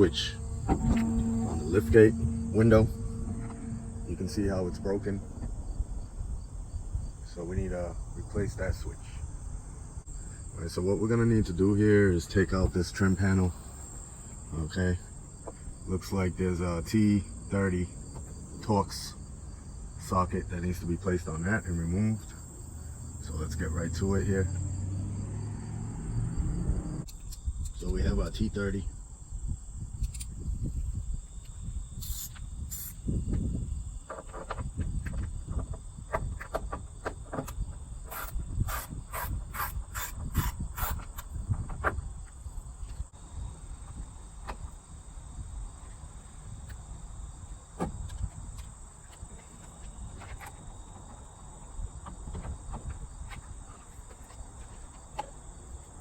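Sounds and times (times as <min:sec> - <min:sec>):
insect chirring: 0:29.0 - 0:34.1.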